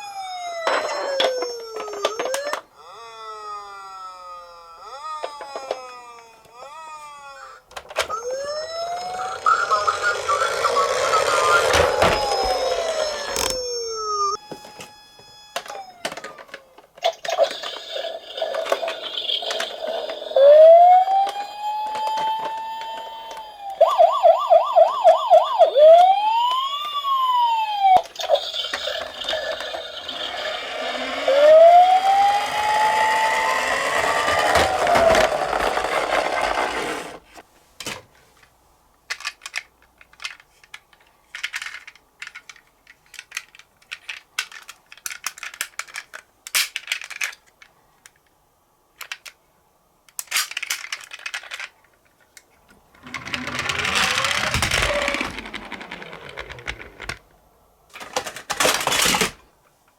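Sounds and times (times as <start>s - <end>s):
toy police car siren: 0.0s - 37.2s, 53.0s - 57.1s.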